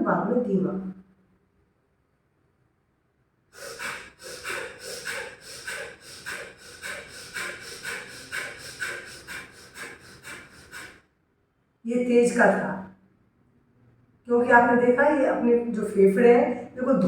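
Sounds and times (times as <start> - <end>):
forceful rapid nasal breathing: 3.5 - 11.1.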